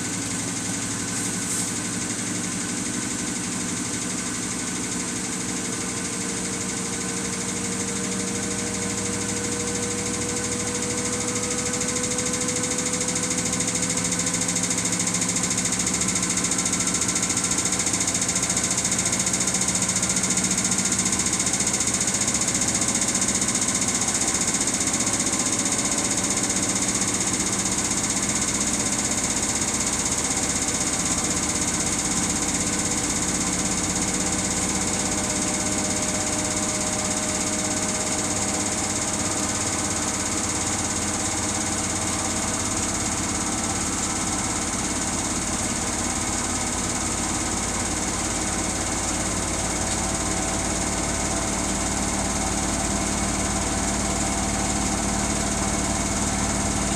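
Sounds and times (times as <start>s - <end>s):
washing machine drum spinning: 0.0s - 56.9s.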